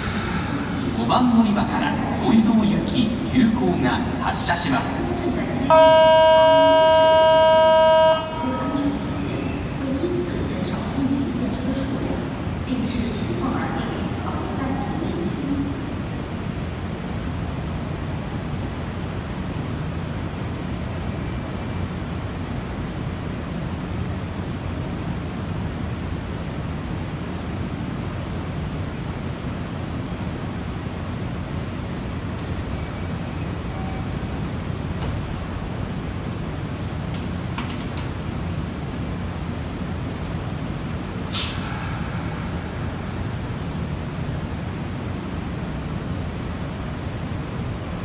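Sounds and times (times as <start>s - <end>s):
air brake hiss: 0.0s - 1.8s, 32.3s - 34.6s, 41.2s - 44.6s
station platform rumble and hiss: 0.0s - 48.0s.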